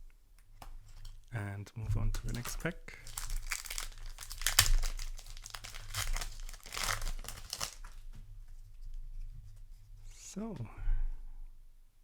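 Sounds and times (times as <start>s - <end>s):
foil crinkling: 2.2s - 8.1s
foil pack tearing: 2.3s - 8.0s.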